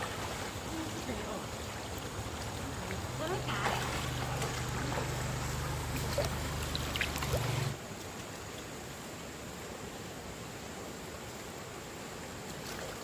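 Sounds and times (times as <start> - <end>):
stream water running: 0.0 - 13.0
low hum: 2.3 - 7.8.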